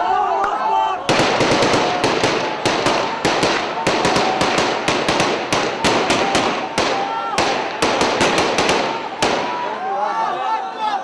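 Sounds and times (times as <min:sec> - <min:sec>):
sharp cracks: 0:01.1 - 0:09.8.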